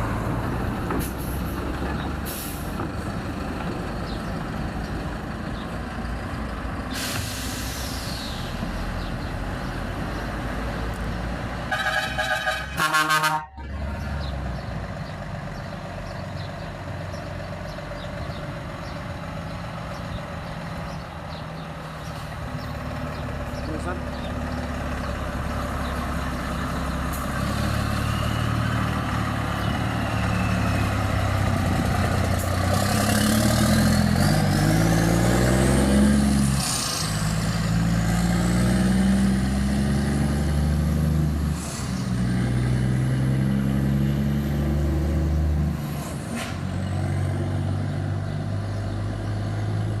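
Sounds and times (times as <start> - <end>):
diesel truck engine revving: 0.0 - 50.0.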